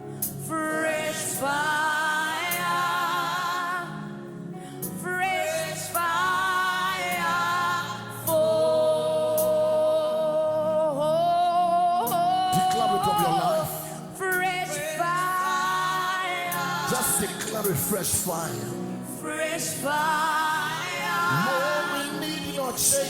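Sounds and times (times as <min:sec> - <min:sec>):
person singing gospel: 0:00.0 - 0:23.0.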